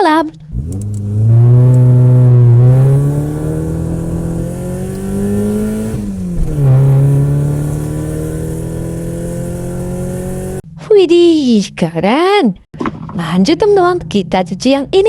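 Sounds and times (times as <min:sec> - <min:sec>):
race car engine revving: 0:00.4 - 0:10.6.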